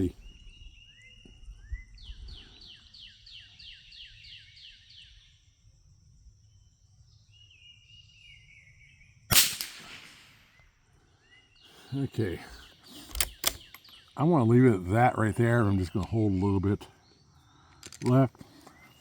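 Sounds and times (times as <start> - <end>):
birds chirping: 0.0 - 9.2, 10.3 - 19.0
rifle shot with echo: 9.3 - 10.6.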